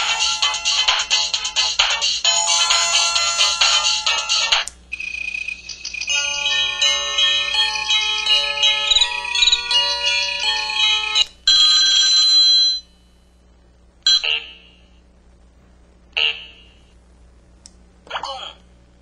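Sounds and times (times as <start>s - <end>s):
phone ringtone melody: 0.0s - 12.9s.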